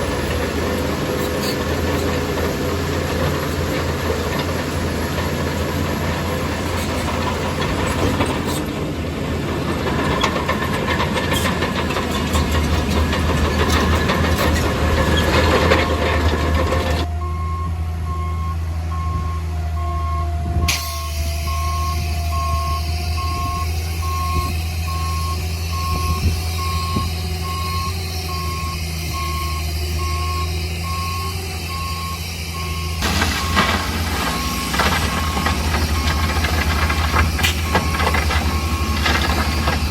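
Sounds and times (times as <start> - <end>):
heavy machine engine running: 0.0 - 39.9
reversing alarm beeping: 17.0 - 39.9.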